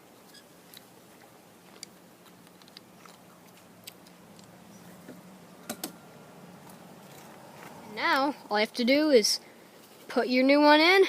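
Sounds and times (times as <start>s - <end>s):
plastic parts clicking and tapping: 1.7s - 3.2s.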